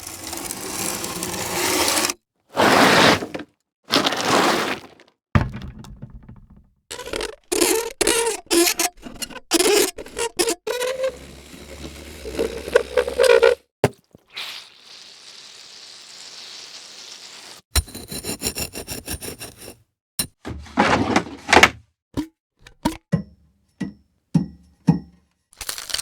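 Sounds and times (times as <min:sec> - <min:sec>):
creaking: 0:05.4 - 0:13.5.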